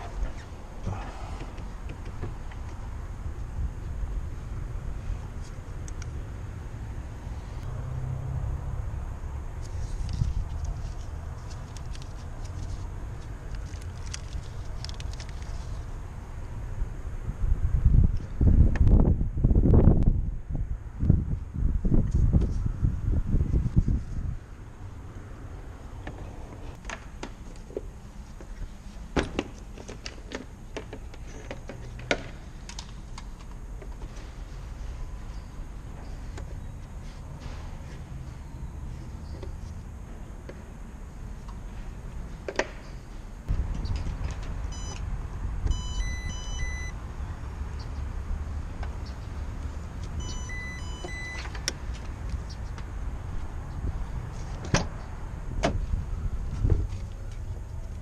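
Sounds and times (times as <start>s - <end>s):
short electronic beeps: 44.7s - 45.0s, 45.7s - 47.0s, 50.2s - 51.4s.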